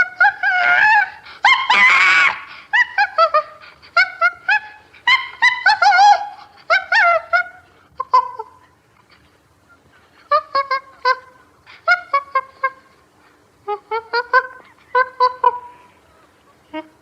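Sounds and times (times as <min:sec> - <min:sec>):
chimpanzee hooting: 0:00.0 - 0:08.8, 0:13.6 - 0:17.0.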